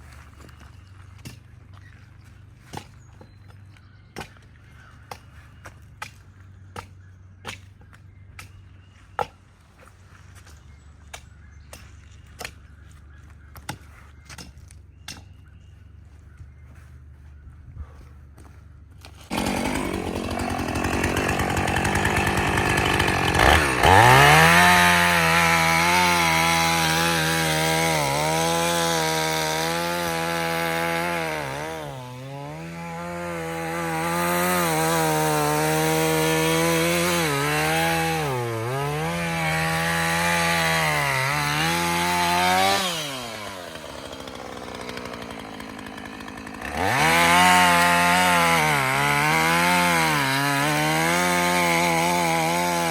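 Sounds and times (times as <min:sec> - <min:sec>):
chainsaw cutting wood: 0:19.0 - 0:52.9.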